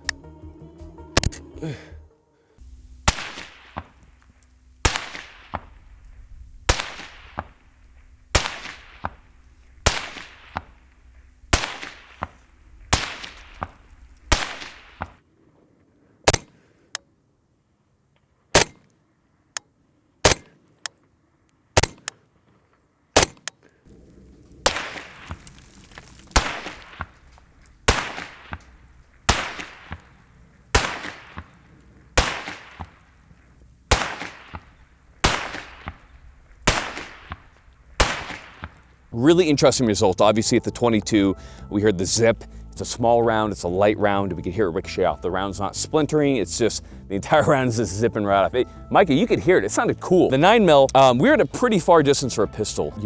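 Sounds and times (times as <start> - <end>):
rifle shot cracks with echo: 2.6 - 15.2, 16.3 - 16.6, 18.6 - 18.8, 20.2 - 20.6, 21.8 - 22.1, 23.2 - 39.1
bullet impact thud on concrete: 3.1 - 4.3, 4.9 - 5.9, 6.8 - 10.8, 11.6 - 15.2, 24.7 - 30.2, 30.8 - 33.1, 34.0 - 38.8.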